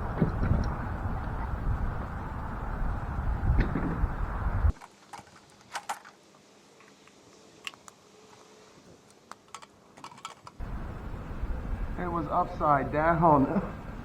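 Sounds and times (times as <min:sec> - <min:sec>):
small hard parts clicking: 0:04.7 - 0:08.4, 0:09.0 - 0:10.6.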